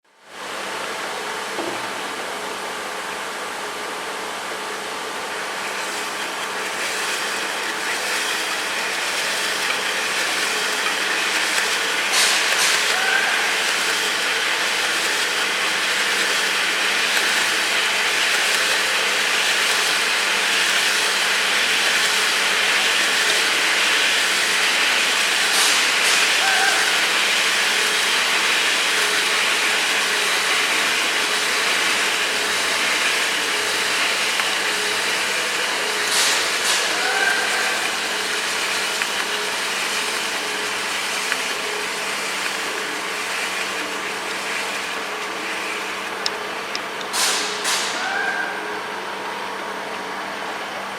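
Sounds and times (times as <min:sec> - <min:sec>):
motor hum: 0:00.3 - 0:25.9
machine hiss: 0:05.4 - 0:46.1, 0:47.1 - 0:48.1.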